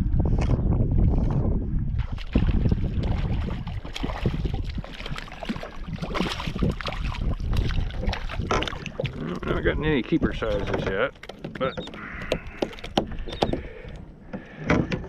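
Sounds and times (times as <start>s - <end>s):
wind buffeting microphone: 0.0s - 11.2s
water splashing around kayak: 0.4s - 15.0s
small crackling ticks and knocks: 8.4s - 15.0s.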